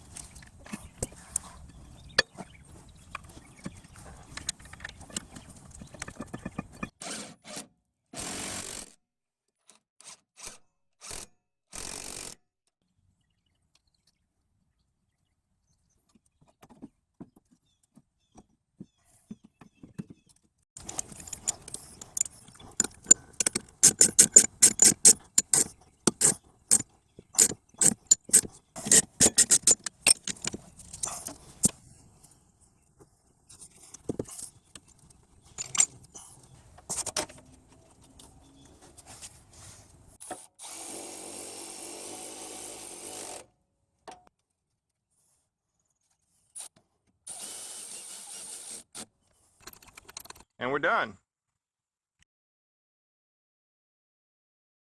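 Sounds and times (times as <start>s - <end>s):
power tool whirring: 7.0s - 9.0s, 40.6s - 43.4s
sharp metallic clicks and knocks: 19.4s - 31.8s, 49.6s - 50.5s.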